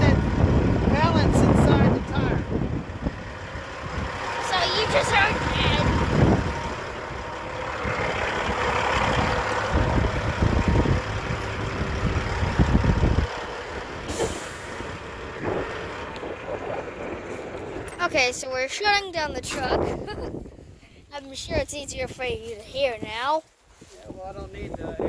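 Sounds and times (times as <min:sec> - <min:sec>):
diesel truck engine idling: 0:00.0 - 0:20.6
air hiss burst: 0:14.1 - 0:14.8.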